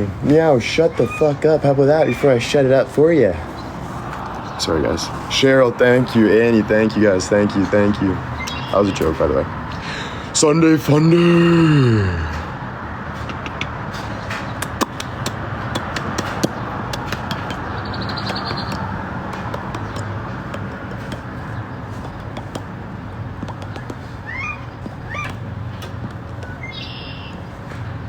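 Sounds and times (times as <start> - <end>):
high-pitched animal calls: 0.7 - 2.6, 8.3 - 9.0, 23.7 - 25.5, 26.4 - 27.4.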